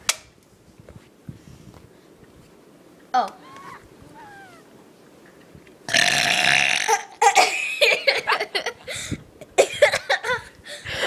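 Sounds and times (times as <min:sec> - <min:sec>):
child burping: 0:05.9 - 0:07.7
giggling laughter: 0:07.8 - 0:08.9.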